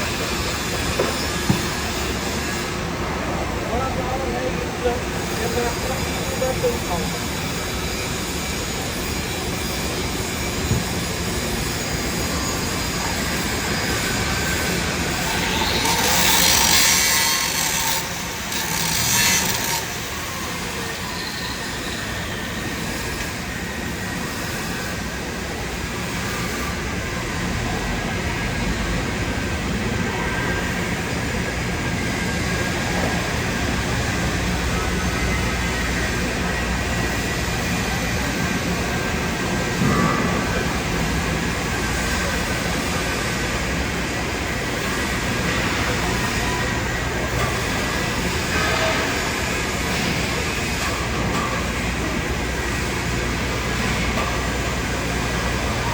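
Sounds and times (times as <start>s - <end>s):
low workshop drone: 0.0s - 55.9s
welding arc hissing: 5.1s - 25.0s.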